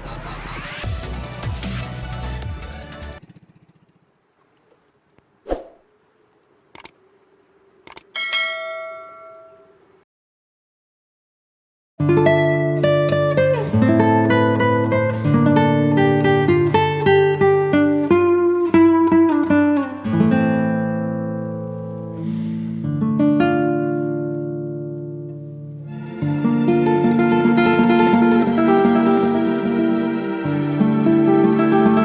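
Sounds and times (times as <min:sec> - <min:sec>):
acoustic guitar music: 0:12.0 - 0:32.0.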